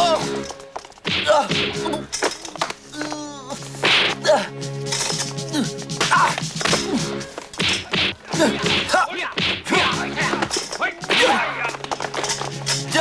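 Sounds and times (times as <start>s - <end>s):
background music: 0.0s - 13.0s
punch and kick impacts: 1.1s - 1.9s, 3.8s - 4.2s, 6.0s - 10.3s, 11.1s - 11.5s.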